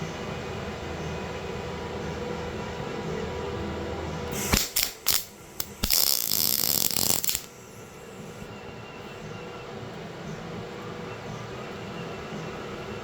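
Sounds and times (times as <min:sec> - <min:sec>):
welder arc crackling: 0:04.4 - 0:07.5.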